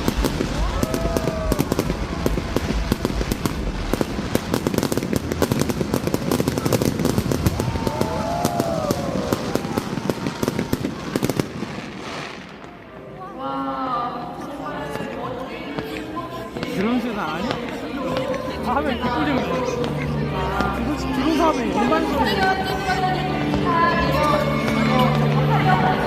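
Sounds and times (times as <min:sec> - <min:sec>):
fireworks crackling and popping: 0:00.0 - 0:13.1.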